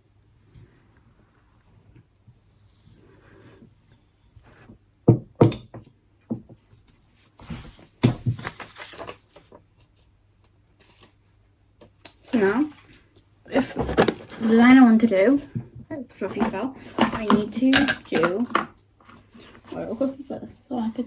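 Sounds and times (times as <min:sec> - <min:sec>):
objects clattering: 0:16.2 - 0:19.8.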